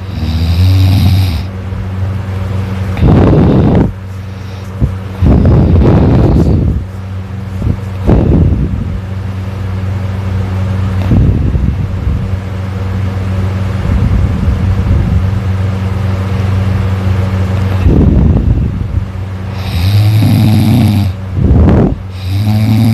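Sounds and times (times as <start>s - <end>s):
person snoring: 0.0s - 1.5s, 3.0s - 6.7s, 19.5s - 21.2s, 22.1s - 22.9s
steady low hum: 0.0s - 22.9s.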